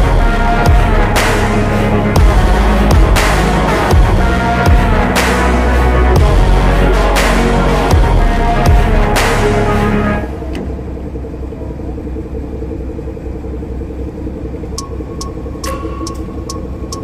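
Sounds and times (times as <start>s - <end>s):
background music: 0.0s - 17.0s
tugboat engine rumble: 0.0s - 17.0s.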